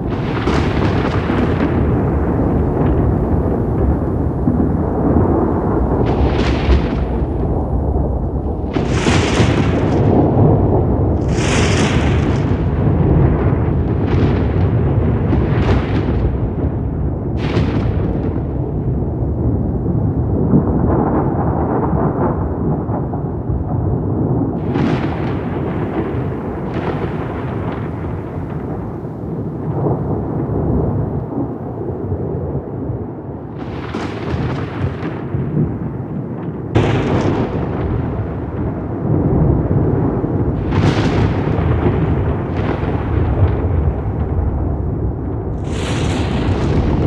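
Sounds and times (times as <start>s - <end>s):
thunder cracks: 0.0s - 47.0s
thunder rumbling: 0.0s - 47.0s
faint crackle: 40.5s - 47.0s.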